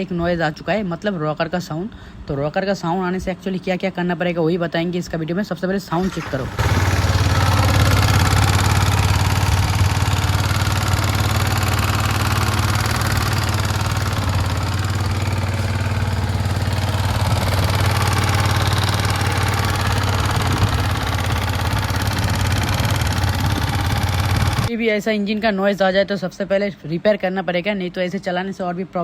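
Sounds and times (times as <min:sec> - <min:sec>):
motorcycle engine idling: 0:06.0 - 0:24.7.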